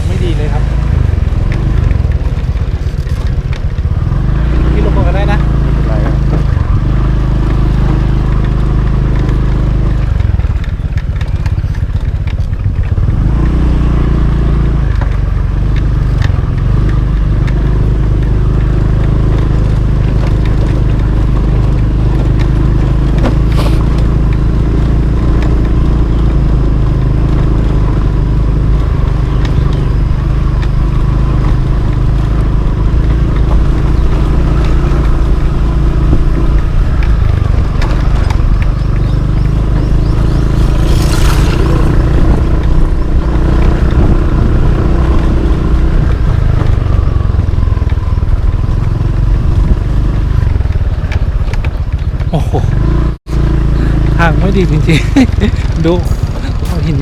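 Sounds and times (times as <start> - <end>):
motorcycle engine running: 0.0 - 57.0.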